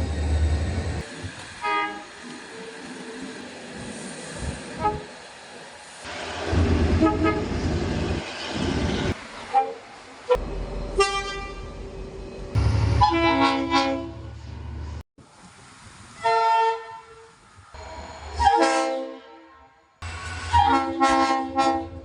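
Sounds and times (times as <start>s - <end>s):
trains rumbling past: 0.0s - 16.4s
train horn blasts: 1.6s - 2.1s, 11.0s - 11.8s, 13.0s - 14.4s, 18.3s - 22.0s.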